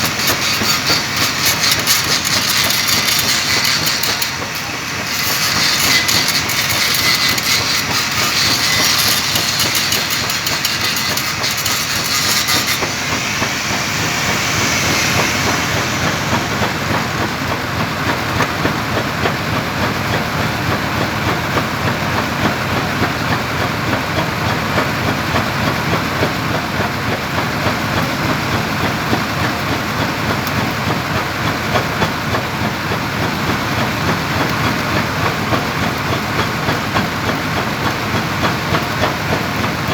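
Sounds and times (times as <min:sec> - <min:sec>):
arc welding crackling hiss: 0:00.0 - 0:17.6.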